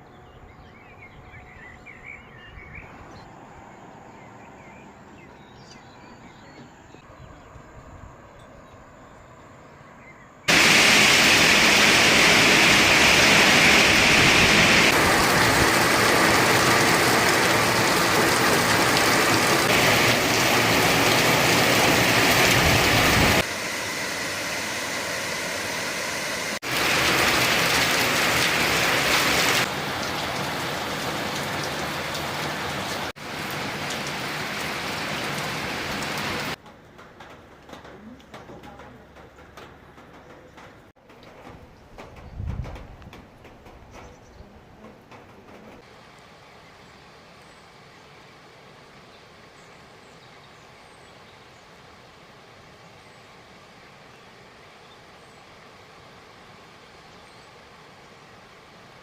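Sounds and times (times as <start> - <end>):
heavy rain downpour: 10.5 - 36.6.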